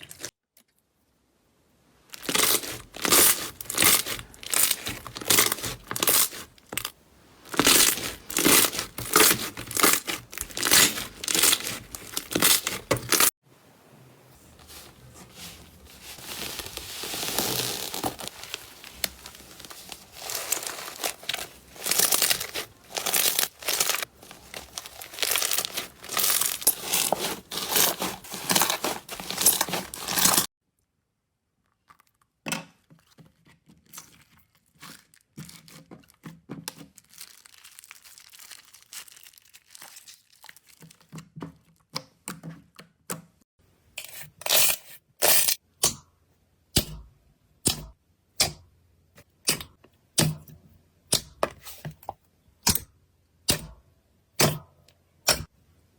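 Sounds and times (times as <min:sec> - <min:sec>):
slime crackling and tearing: 0:02.1 - 0:13.4, 0:15.4 - 0:30.5, 0:36.8 - 0:41.0.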